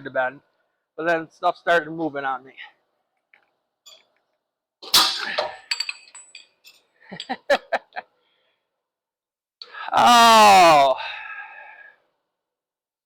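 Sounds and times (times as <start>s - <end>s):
metal clanging and knocking: 4.9s - 6.6s
small metal clinks: 5.4s - 7.5s.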